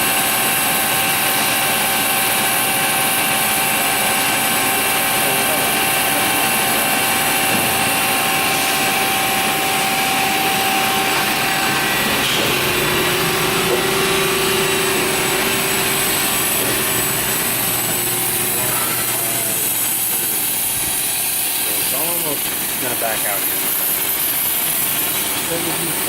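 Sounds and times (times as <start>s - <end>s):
grinder machine hum with hiss: 0.0s - 26.0s
steady machine tone: 0.0s - 26.0s.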